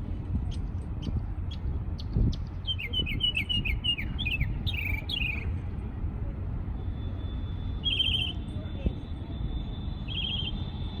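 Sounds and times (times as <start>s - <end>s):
songbird singing: 0.4s - 5.7s, 7.7s - 10.8s.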